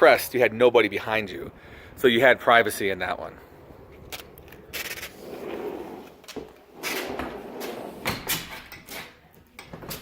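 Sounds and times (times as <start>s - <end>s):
door scraping slide: 4.6s - 8.7s.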